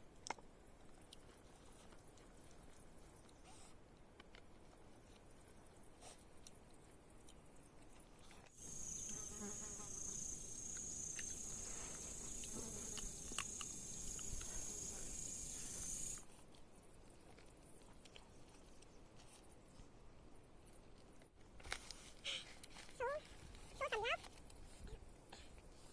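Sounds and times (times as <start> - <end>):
insects chirping: 0.0 - 21.4.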